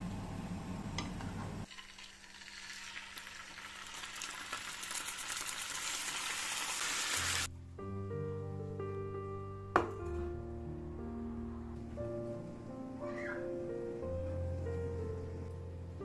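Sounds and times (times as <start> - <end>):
food sizzling in hot oil: 1.6 - 7.5
music with held notes: 7.5 - 16.0.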